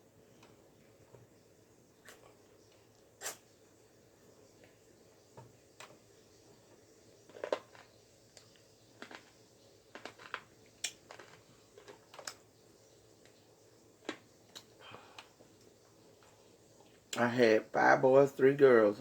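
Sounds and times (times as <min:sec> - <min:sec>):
chewing crackles: 0:07.2 - 0:12.5
handling food: 0:07.2 - 0:13.3.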